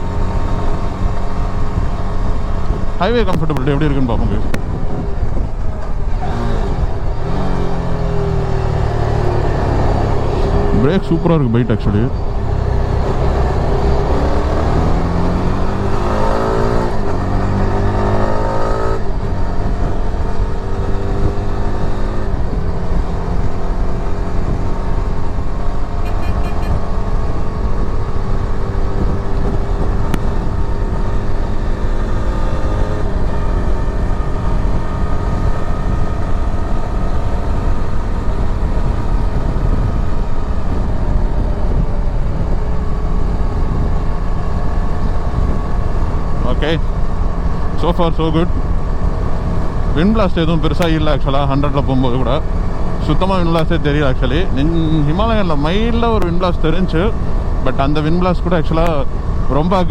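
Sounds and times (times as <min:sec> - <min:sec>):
motorcycle engine accelerating: 0:00.0 - 0:59.9
wind rushing: 0:33.0 - 0:47.8.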